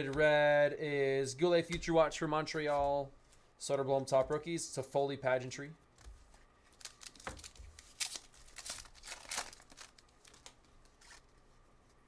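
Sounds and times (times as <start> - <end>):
wrapper crinkling and tearing: 6.7 - 11.3.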